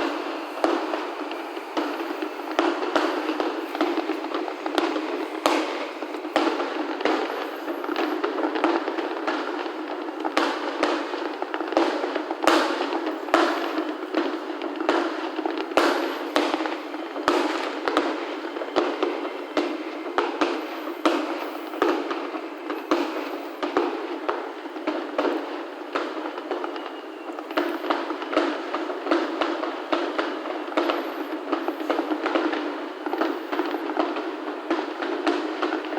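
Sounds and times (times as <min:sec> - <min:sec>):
firework shell bursts: 0:00.0 - 0:11.1, 0:11.8 - 0:23.9
firework crackle: 0:00.0 - 0:35.9.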